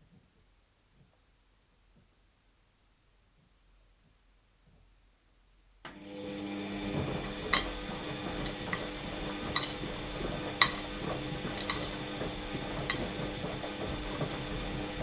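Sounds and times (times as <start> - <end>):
washing machine motor hum: 5.9 - 15.0
clicks and knocks inside drum: 6.9 - 15.0.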